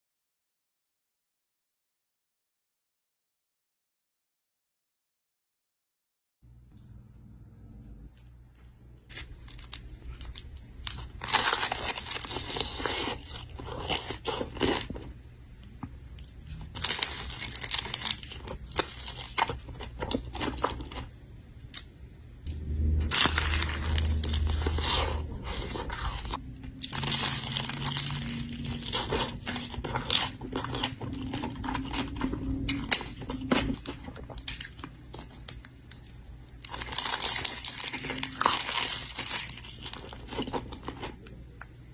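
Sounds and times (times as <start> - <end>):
crunchy food chewing: 8.2 - 15.2, 16.1 - 21.9, 22.9 - 41.7
food packaging crinkling: 8.5 - 15.2, 16.5 - 21.2, 23.0 - 41.4.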